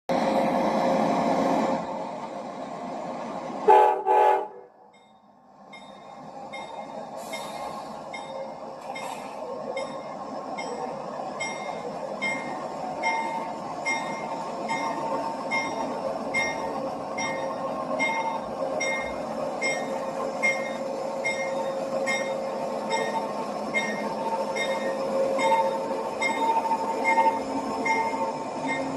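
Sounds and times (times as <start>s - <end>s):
locomotive horn: 3.7s - 4.8s
train wheels clicking over rail joints: 4.9s - 28.9s.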